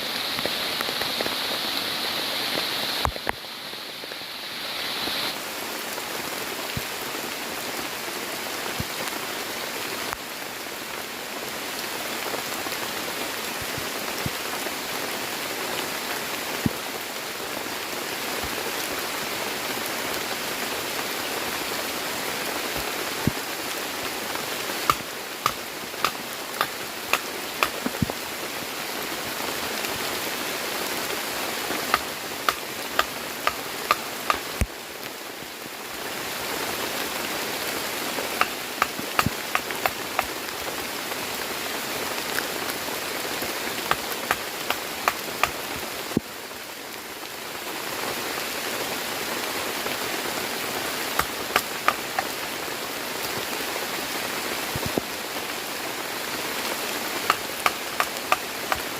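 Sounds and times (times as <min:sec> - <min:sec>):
raindrops tapping close by: 0:00.0 - 0:03.5, 0:22.6 - 0:35.0, 0:37.9 - 0:41.4, 0:42.3 - 0:46.4, 0:51.0 - 0:52.6, 0:57.0 - 0:58.9
heavy rain falling: 0:00.0 - 0:58.9.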